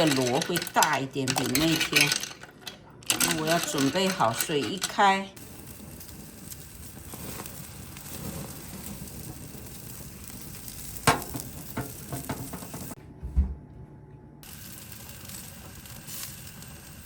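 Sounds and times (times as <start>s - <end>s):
utensils clicking: 0.0s - 5.2s
food sizzling: 3.1s - 13.0s, 14.4s - 17.0s
low thud: 12.2s - 13.7s.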